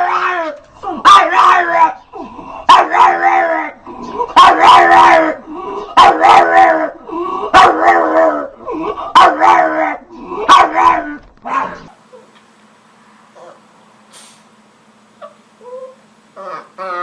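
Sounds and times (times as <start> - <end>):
dog howling barks: 0.0 - 2.0, 2.6 - 11.9.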